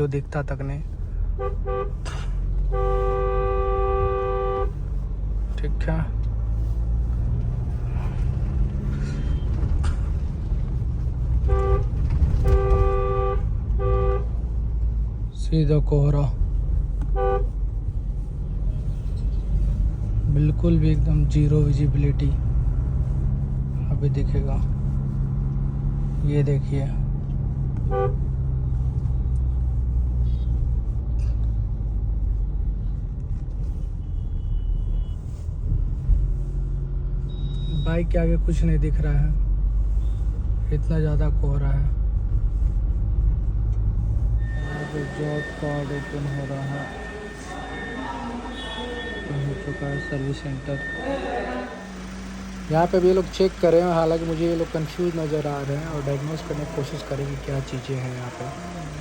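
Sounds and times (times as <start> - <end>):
engine and road rumble: 0.0 - 59.0
two-tone car horn: 1.4 - 4.9, 11.4 - 14.5, 17.1 - 17.6, 27.8 - 28.4, 34.0 - 35.4, 37.3 - 37.9, 44.4 - 53.3.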